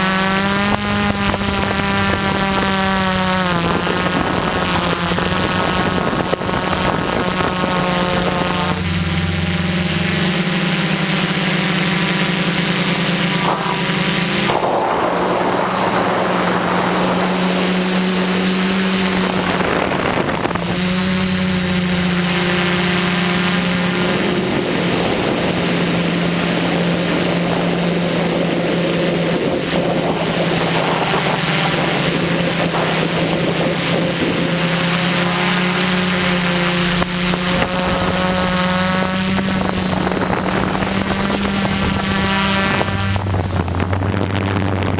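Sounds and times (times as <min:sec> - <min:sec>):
drone propellers humming: 0:00.0 - 0:44.9
rushing noise: 0:00.8 - 0:44.9.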